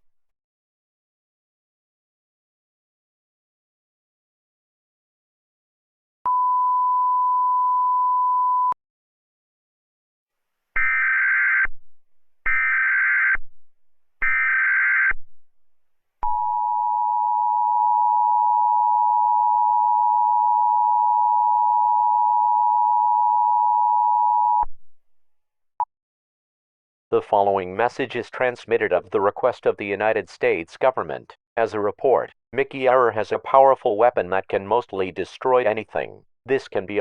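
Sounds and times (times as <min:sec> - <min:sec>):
steady single beep: 0:06.3 - 0:08.8.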